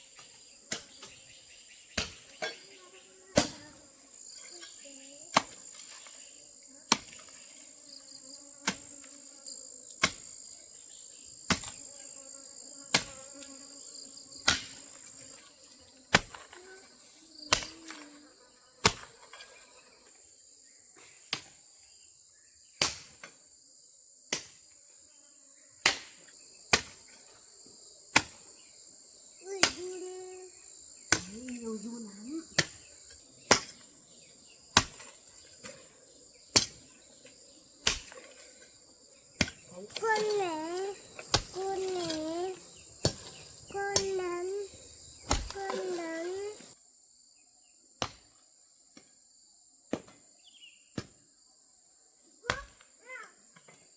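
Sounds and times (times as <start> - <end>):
insects droning: 0.0 - 53.9
tool striking wood: 45.2 - 45.7.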